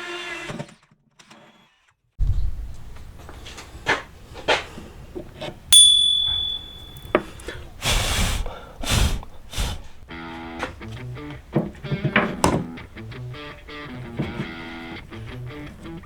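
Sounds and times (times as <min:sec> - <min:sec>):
sharp metallic clink: 0:05.8 - 0:07.1.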